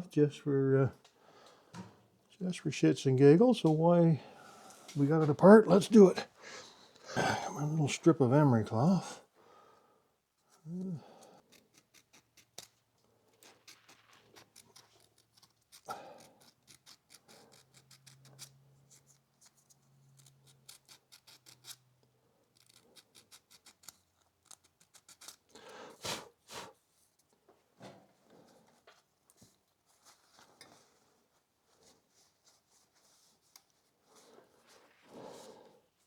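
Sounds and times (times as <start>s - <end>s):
emery cloth scratching metal: 11.5s - 21.9s.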